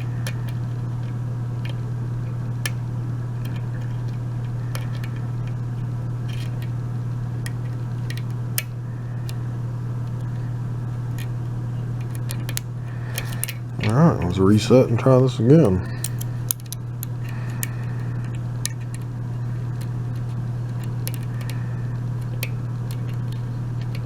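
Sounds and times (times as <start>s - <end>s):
steady low hum: 0.0s - 24.0s
lock pick clicking in a lock: 12.0s - 13.6s, 16.0s - 17.7s, 20.7s - 21.5s.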